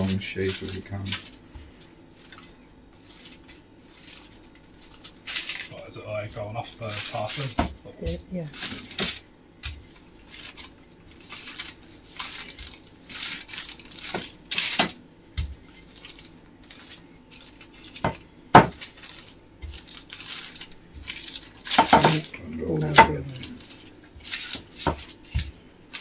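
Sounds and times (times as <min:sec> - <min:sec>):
paper rustling: 0:00.0 - 0:26.0
knocks on kitchen worktop: 0:18.0 - 0:18.8.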